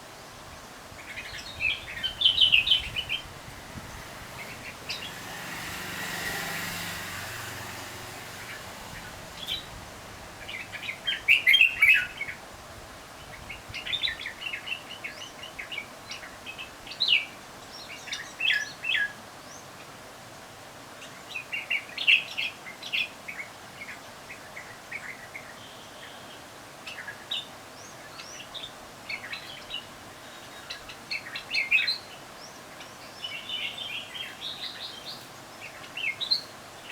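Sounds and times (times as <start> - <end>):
broad rush of noise: 0.0 - 13.2
birds chirping: 0.6 - 12.4.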